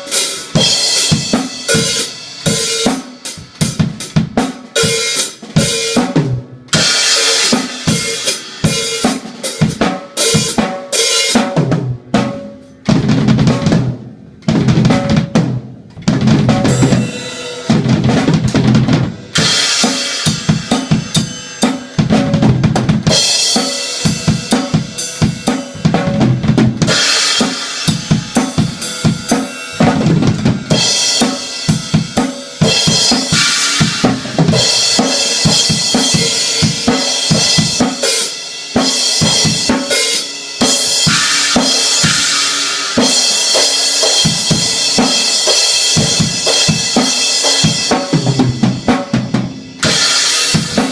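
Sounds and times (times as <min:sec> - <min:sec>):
snare and bass drum: 0:00.0 - 0:17.1, 0:17.7 - 0:50.9
cymbal crashes and rides: 0:16.3 - 0:50.9.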